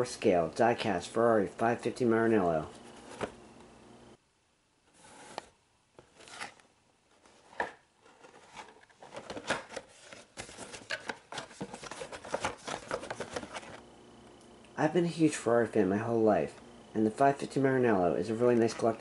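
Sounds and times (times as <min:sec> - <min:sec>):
packaging rustling and scraping: 0:02.7 - 0:03.4, 0:05.0 - 0:13.8.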